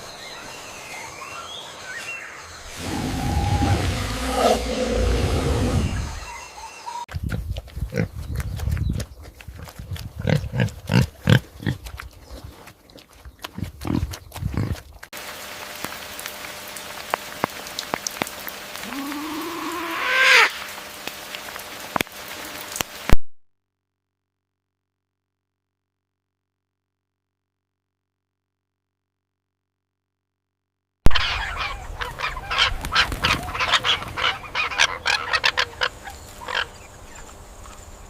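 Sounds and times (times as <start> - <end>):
rising animal call: 2.6 - 7.0, 18.8 - 20.6
pig grunting: 2.7 - 6.3, 10.2 - 11.9, 13.5 - 14.9, 18.8 - 20.2.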